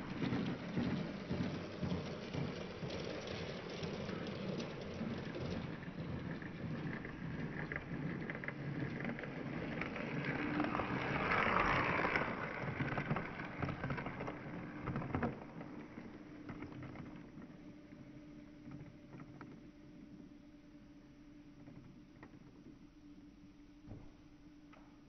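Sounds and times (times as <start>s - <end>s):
toy train rattling on plastic track: 0.0s - 17.3s.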